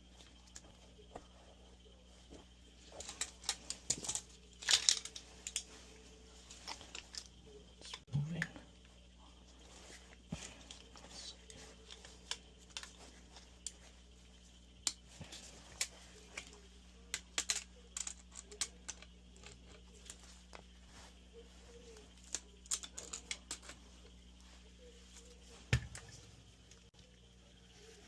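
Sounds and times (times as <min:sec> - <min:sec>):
steady low hum: 0:00.0 - 0:28.0
tools and metal parts clicking: 0:02.8 - 0:05.7, 0:14.8 - 0:20.3, 0:22.1 - 0:23.8.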